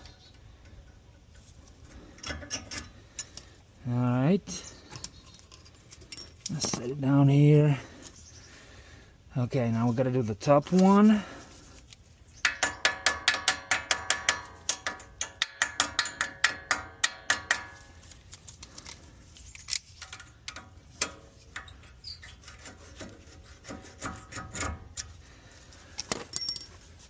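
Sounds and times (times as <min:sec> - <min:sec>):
tool scraping metal: 0:19.6 - 0:25.1.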